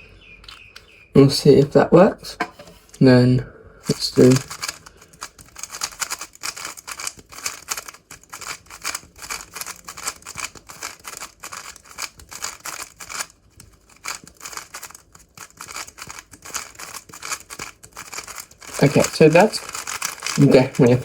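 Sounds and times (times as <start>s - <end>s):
puzzle cube turning clicks: 3.8s - 21.0s.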